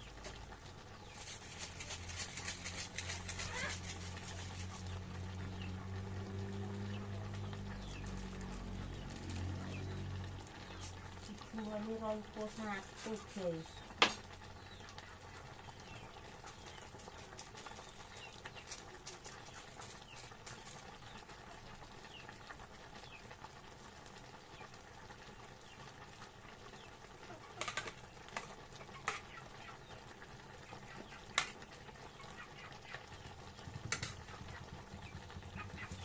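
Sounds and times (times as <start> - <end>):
birds chirping: 2.9 - 17.0, 26.7 - 36.0.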